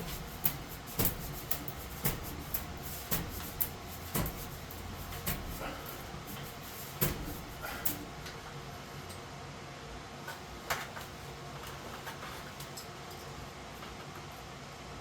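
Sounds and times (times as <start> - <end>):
sharp light clicks and knocks: 0.0 - 8.4
steady low hum: 0.0 - 9.6.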